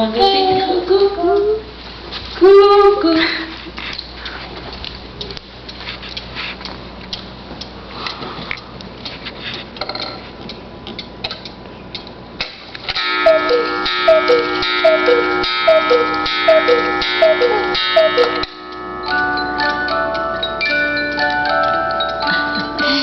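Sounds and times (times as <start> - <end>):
steady ringing chord: 12.9 - 23.0
clock ticking: 13.0 - 23.0
two-note cuckoo calls: 13.1 - 18.7.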